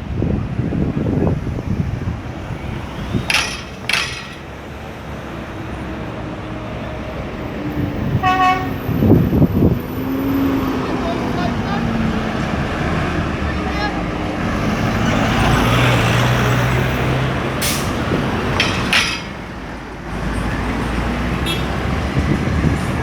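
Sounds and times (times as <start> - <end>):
vehicles passing: 0.0 - 23.0
vehicle horn toot: 8.2 - 8.8, 21.4 - 21.8.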